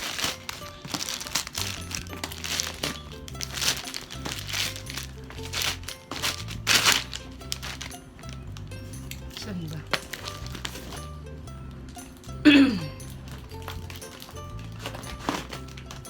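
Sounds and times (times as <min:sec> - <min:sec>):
packaging crinkling and rustling: 0:00.0 - 0:08.7, 0:09.9 - 0:11.1, 0:13.3 - 0:16.0
music with stepping bass line: 0:00.6 - 0:16.0.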